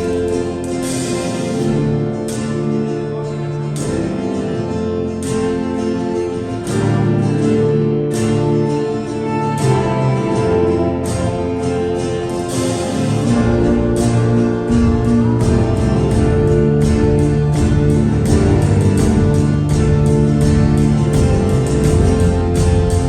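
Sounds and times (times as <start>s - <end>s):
live band playing guitar-led song: 0.0s - 23.0s
strong accented hits: 11.1s - 23.0s.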